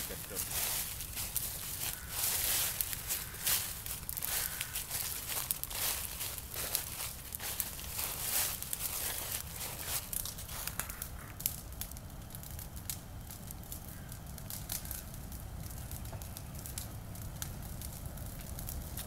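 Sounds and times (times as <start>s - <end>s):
fire crackling and popping: 0.0s - 19.0s
low drone of flames: 0.0s - 19.0s.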